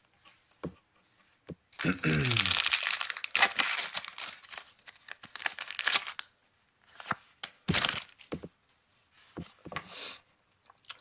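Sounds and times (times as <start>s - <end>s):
foil wrapper tearing and crinkling: 1.8s - 6.3s.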